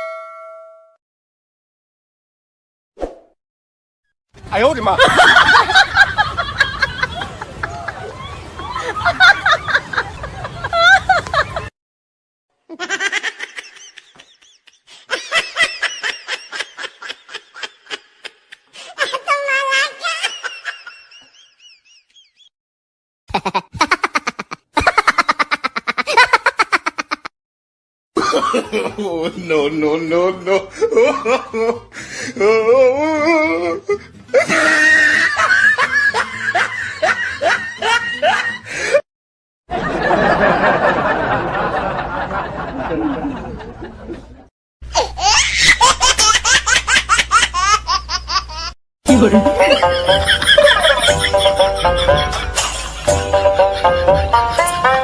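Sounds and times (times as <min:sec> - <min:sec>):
high-pitched giggling: 0:23.3 - 0:27.3, 0:44.9 - 0:52.9
laughing sound effect: 0:23.3 - 0:27.3, 0:42.8 - 0:55.0.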